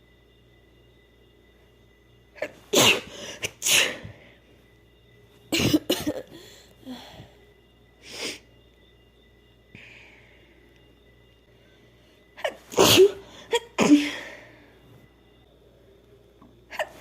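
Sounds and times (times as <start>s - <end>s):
woman sneezing: 2.4s - 4.2s, 12.4s - 14.4s.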